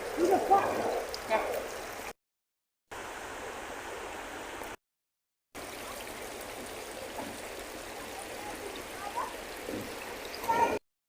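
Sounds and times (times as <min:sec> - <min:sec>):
running water rushing: 0:00.0 - 0:02.2, 0:02.9 - 0:04.8, 0:05.6 - 0:10.8.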